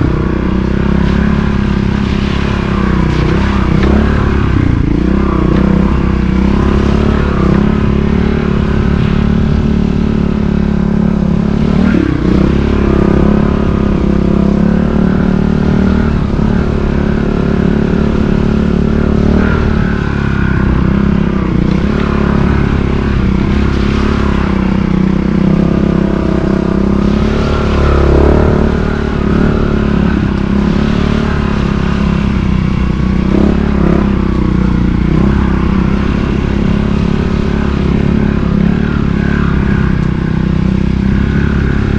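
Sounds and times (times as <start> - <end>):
motorcycle engine running: 0.0 - 41.9.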